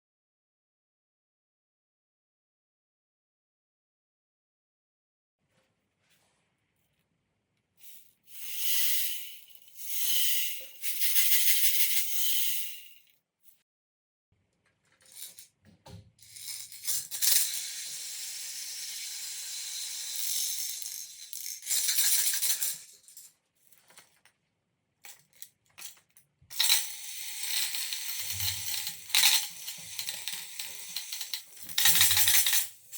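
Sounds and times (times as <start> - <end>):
beads trickling through tubes: 16.3 - 24.1, 25.0 - 32.9
beads rattling: 26.6 - 32.9.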